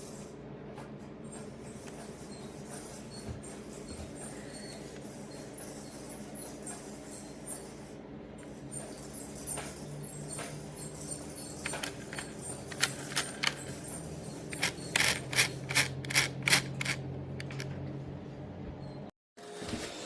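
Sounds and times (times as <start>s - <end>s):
sharp clicks and knocks: 11.5s - 17.8s.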